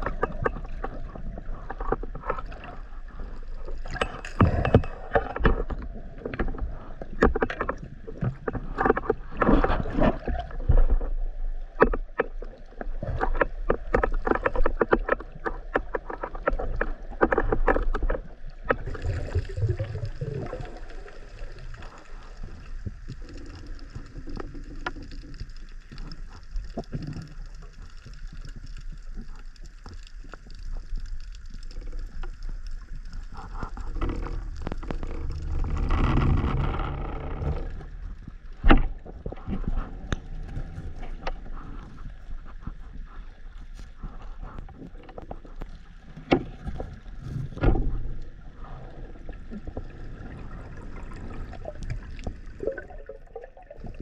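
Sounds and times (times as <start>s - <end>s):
water splashing and sloshing: 0.0s - 54.0s.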